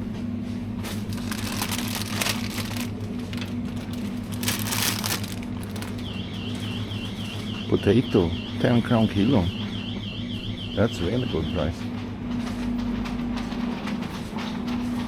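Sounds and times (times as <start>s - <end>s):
rustling and crinkling: 0.8s - 6.8s.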